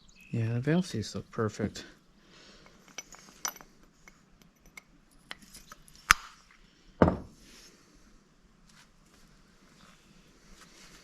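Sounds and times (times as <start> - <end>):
metal tools clinking: 2.6 - 4.8.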